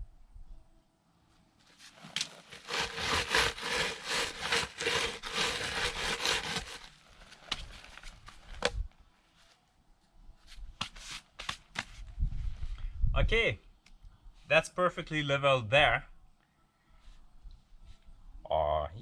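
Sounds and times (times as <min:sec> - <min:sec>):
rapid scraping strokes: 0:01.8 - 0:08.0.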